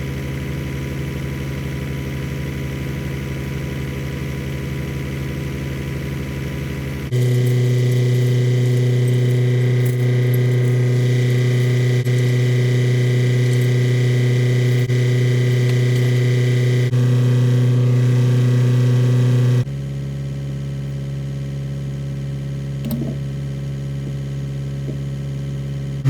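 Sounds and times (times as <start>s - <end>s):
excavator diesel engine running: 6.6s - 19.7s.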